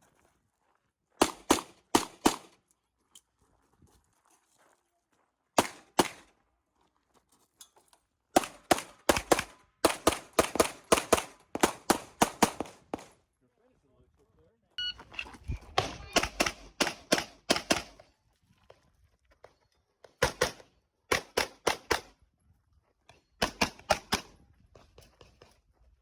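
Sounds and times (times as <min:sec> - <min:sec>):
pistol shots: 0:15.8 - 0:18.0.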